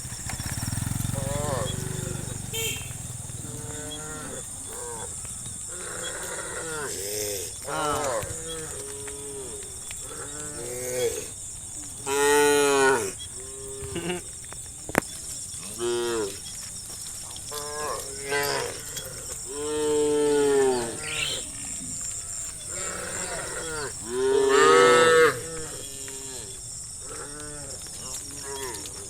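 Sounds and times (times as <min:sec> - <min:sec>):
cattle mooing: 0:00.7 - 0:11.3, 0:17.5 - 0:29.0.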